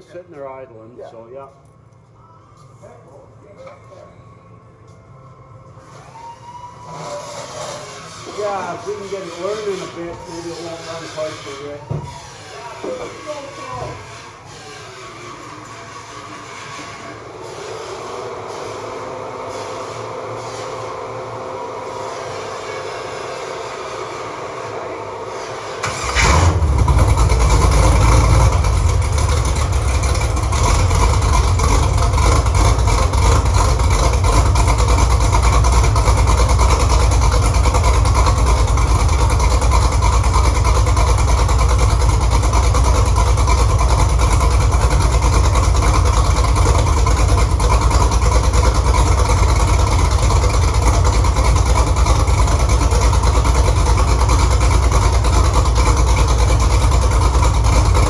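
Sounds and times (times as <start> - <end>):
car engine starting and idling: 7.5 - 58.0.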